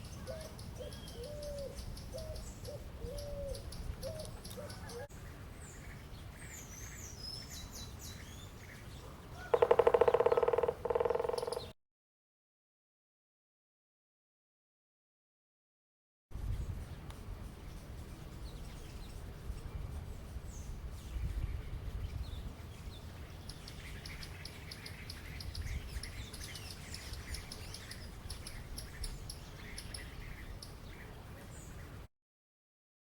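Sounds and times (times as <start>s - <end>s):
woodpecker tapping on branch: 9.5s - 11.7s
low wind rumble: 16.3s - 32.1s.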